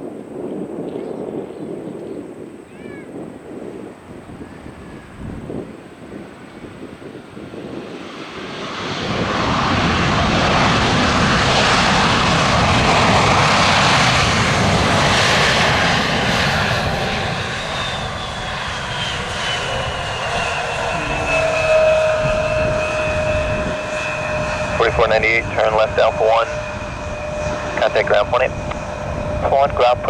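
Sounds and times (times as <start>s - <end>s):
jet engine roar: 0.0s - 30.0s
turbine whine spooling down: 8.4s - 30.0s.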